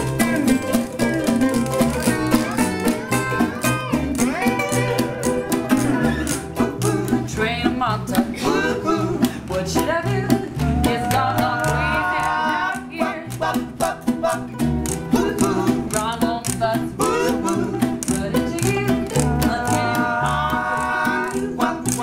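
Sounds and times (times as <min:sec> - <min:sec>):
percussion: 0:00.0 - 0:22.0
strummed ukuleles: 0:00.0 - 0:22.0
upright double bass: 0:00.0 - 0:22.0
voices singing: 0:00.0 - 0:22.0.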